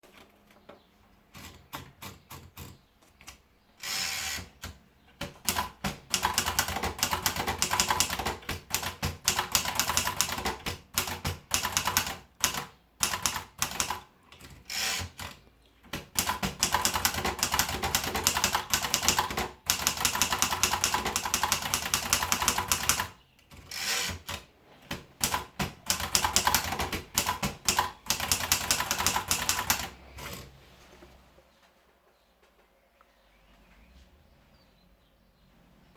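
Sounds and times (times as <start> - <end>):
typewriter keys clacking: 5.4 - 15.4, 16.0 - 24.5, 25.2 - 30.4.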